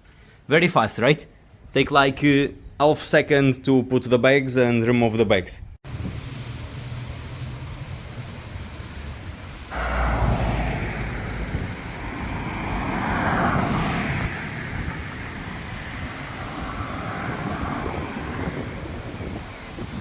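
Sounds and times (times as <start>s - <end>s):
wind noise on microphone: 5.6s - 20.0s.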